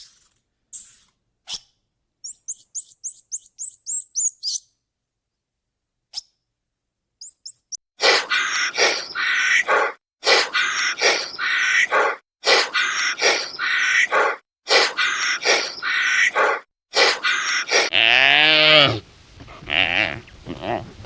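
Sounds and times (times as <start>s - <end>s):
high rising chirps: 2.2s - 4.6s, 7.2s - 7.8s
loud animal call: 8.0s - 21.0s.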